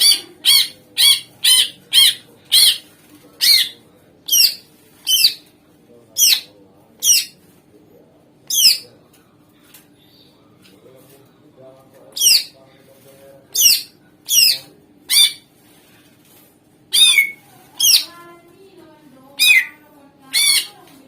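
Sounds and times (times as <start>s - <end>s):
bird harsh calls: 0.0s - 5.4s, 12.2s - 12.6s, 13.6s - 15.5s, 16.9s - 18.1s, 19.4s - 20.8s.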